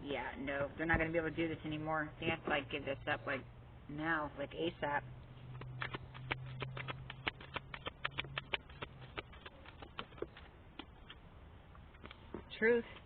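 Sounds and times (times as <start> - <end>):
cards being shuffled: 5.5 - 11.2.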